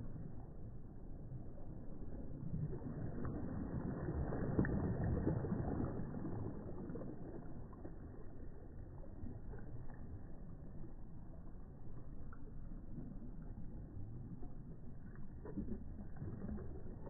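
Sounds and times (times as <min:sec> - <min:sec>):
small waves breaking: 0:01.2 - 0:11.2.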